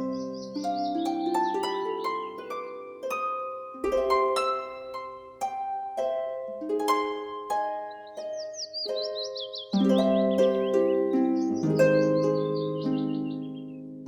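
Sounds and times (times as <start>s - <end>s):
birds chirping: 0.0s - 3.4s, 7.5s - 14.0s
plucked harp-like music: 0.0s - 14.0s.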